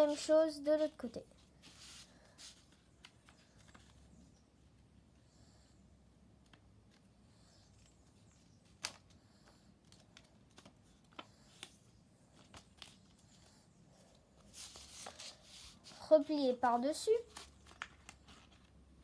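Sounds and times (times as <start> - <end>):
paper being folded: 0.0 - 4.2, 7.8 - 13.6, 14.4 - 19.0.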